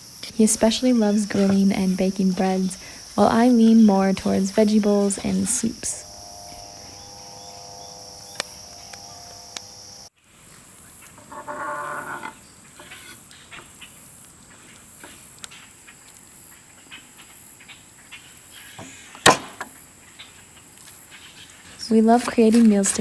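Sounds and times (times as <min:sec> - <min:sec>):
high insect-like tone: 0:00.0 - 0:10.1
low animal call: 0:00.4 - 0:10.1.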